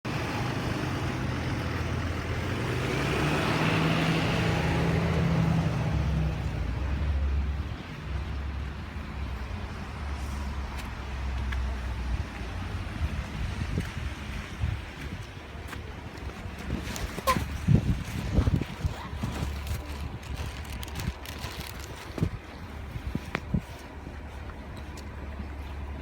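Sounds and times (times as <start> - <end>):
vehicle passing: 0.1 - 13.7.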